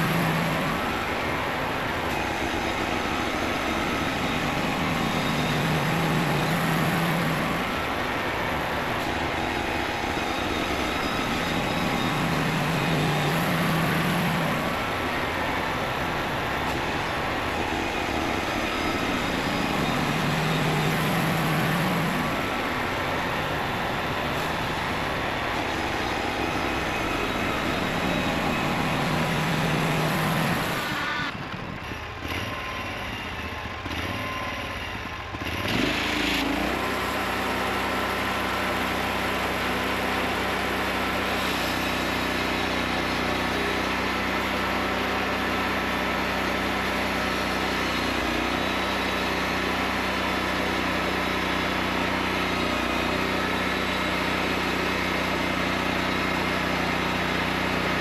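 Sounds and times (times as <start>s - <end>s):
saw cutting lumber: 0.0s - 31.4s, 35.4s - 58.0s
engine humming: 0.0s - 58.0s.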